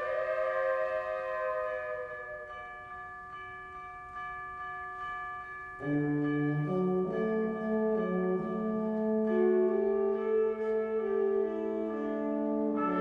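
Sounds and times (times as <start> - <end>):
low brass chords: 5.8 - 13.0.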